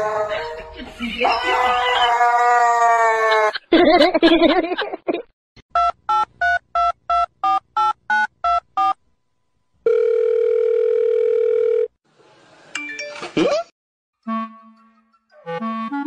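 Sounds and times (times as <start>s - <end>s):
telephone ringing tone: 9.8s - 12.0s.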